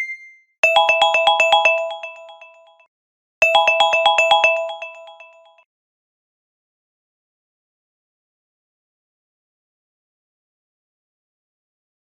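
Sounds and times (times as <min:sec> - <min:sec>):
electronic timer alarm melody: 0:00.0 - 0:05.6.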